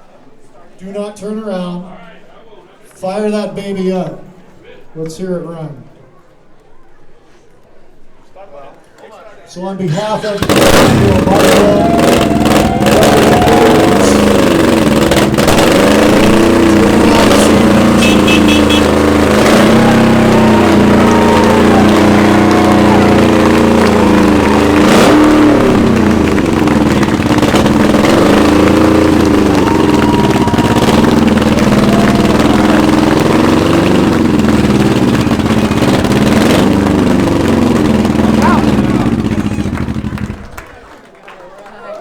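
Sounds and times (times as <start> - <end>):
motorcycle engine revving: 9.9 - 40.8.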